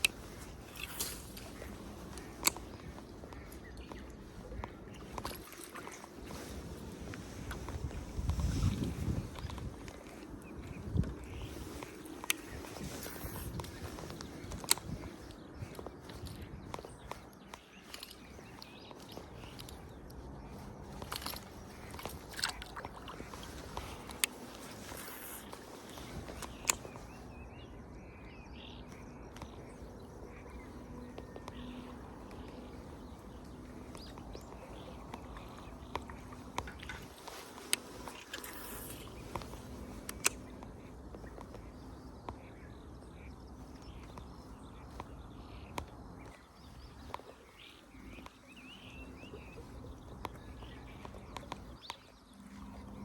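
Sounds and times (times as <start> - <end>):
small birds chirping: 0.0 - 53.0
sharp clicks: 33.6 - 41.7.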